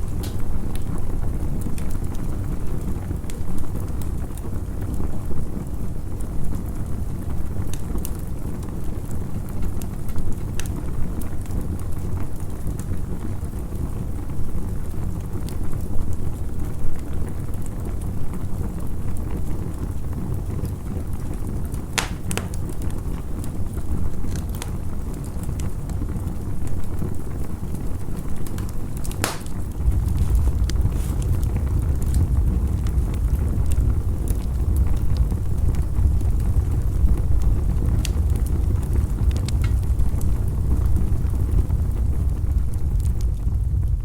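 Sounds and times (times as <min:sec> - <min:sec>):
campfire crackling: 0:00.0 - 0:44.0
fire popping: 0:00.0 - 0:44.0
low rumble: 0:28.5 - 0:44.0.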